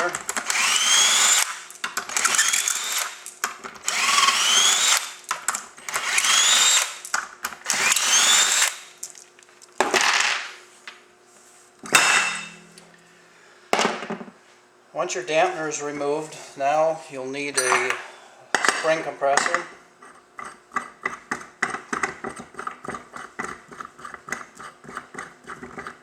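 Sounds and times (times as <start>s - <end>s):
cordless drill spinning: 0.0s - 9.0s.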